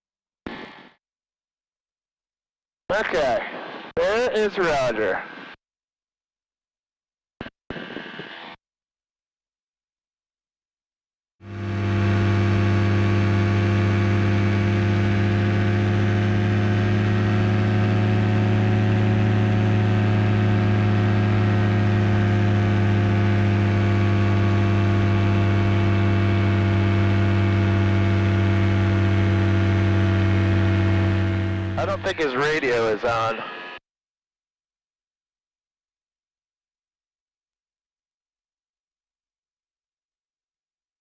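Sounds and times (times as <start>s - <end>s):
aircraft engine droning: 11.5s - 33.7s.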